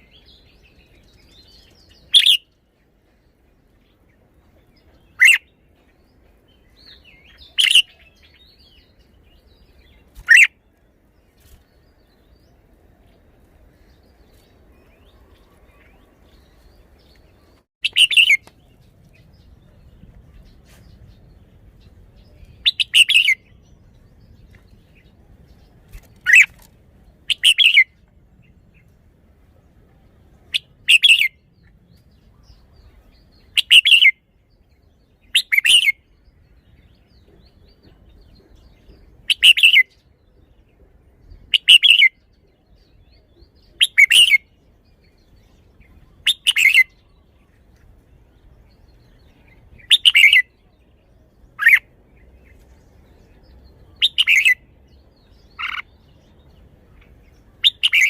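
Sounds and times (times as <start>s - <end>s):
bulbul singing: 13.8s - 28.9s, 48.4s - 52.4s, 53.0s - 58.0s.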